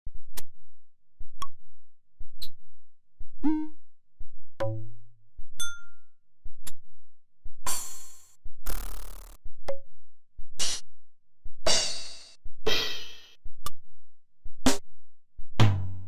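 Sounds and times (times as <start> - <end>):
electronic phone blips and tones: 8.7 - 9.4.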